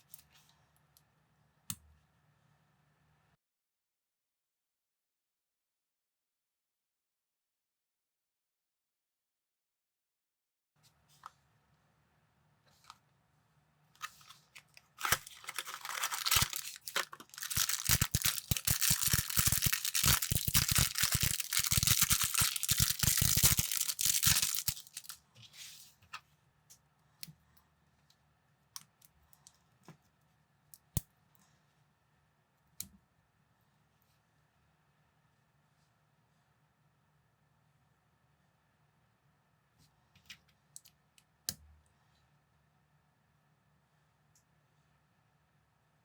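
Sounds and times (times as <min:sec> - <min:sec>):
plastic bag crinkling and tearing: 0:14.0 - 0:25.2.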